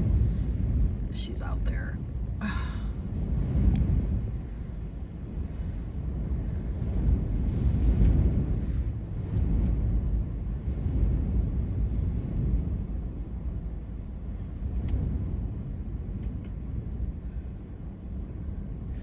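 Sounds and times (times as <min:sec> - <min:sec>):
wind buffeting car: 0:00.0 - 0:19.0.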